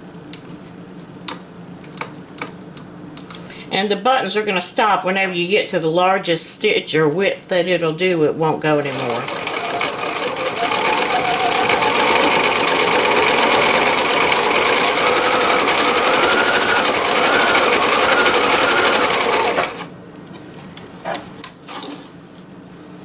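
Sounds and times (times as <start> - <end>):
sewing machine stitching fabric: 8.8 - 19.9, 21.1 - 22.1.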